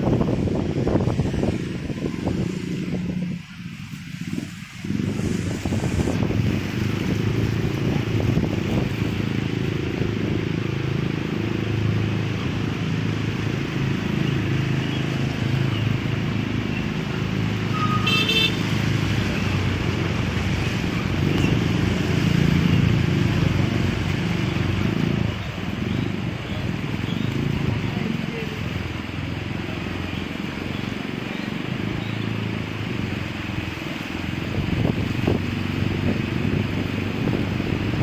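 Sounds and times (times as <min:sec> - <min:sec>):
road and wind noise: 0:00.0 - 0:38.0
horn toot: 0:17.7 - 0:18.7.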